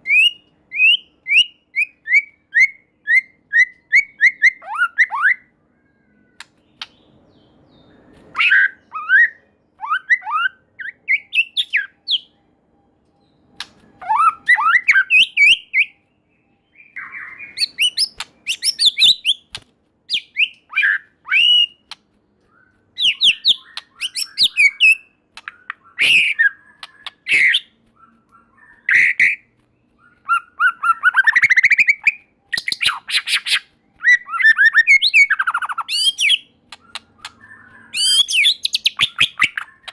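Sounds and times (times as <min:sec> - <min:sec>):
bird singing whistled notes: 0:00.0 - 0:19.5, 0:20.1 - 0:39.9
bird sharp clicks: 0:06.4 - 0:07.1, 0:13.5 - 0:14.6, 0:17.0 - 0:20.8, 0:21.4 - 0:33.7, 0:34.5 - 0:39.9.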